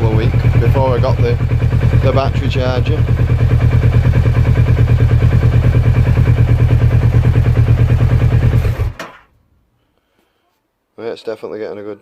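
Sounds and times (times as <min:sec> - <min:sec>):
motorcycle engine idling: 0:00.0 - 0:09.0.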